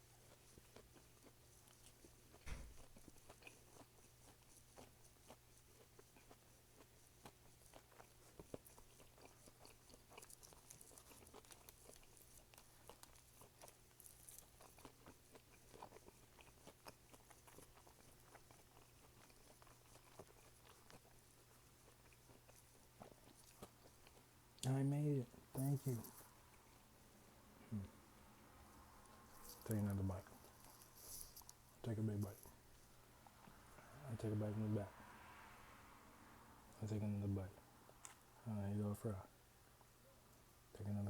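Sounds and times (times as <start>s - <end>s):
chewing and biting: 0.0s - 24.8s, 29.0s - 33.6s.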